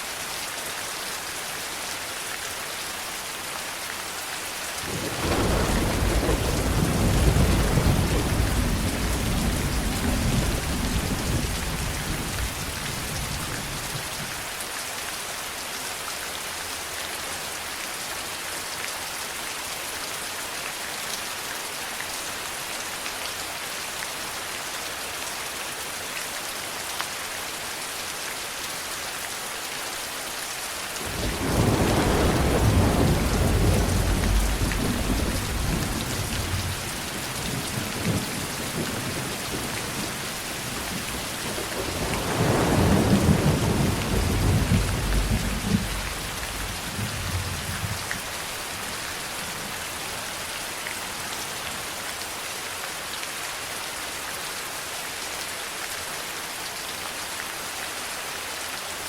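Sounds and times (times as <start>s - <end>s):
steady rain falling: 0.0s - 59.0s
rolling thunder: 4.8s - 13.4s, 31.0s - 48.1s.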